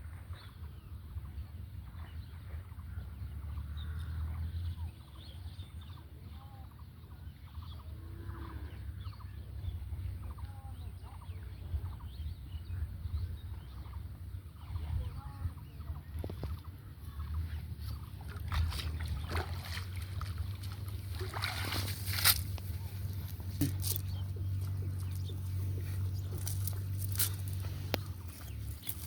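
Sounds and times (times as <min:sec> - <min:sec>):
birds chirping and calling: 0:01.9 - 0:29.0
steady low rumble: 0:08.8 - 0:29.0.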